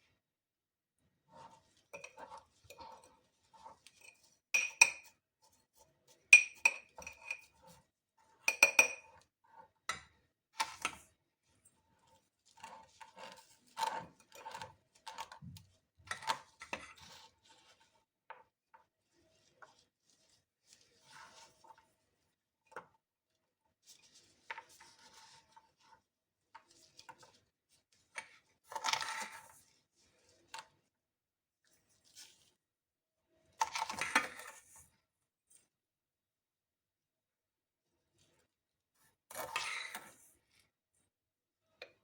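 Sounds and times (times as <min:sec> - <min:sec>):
rubbing and scraping in glass jar: 0:01.3 - 0:05.1.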